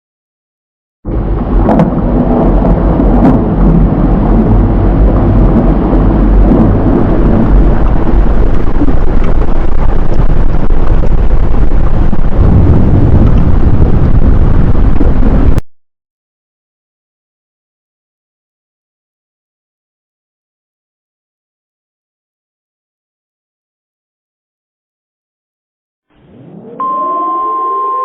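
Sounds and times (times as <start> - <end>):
volcanic eruption deep rumble: 1.1 - 15.6.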